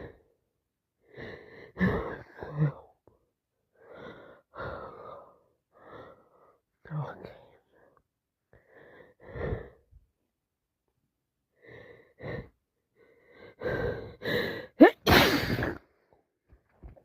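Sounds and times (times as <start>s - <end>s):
woman sneezing: 14.8s - 15.8s.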